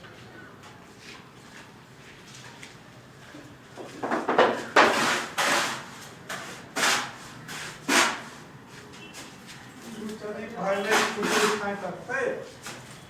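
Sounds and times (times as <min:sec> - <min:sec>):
rough scraping strokes: 0:10.8 - 0:11.7.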